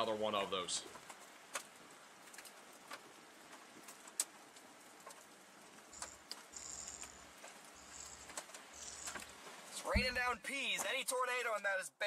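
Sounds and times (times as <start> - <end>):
low hum: 5.9 - 9.4.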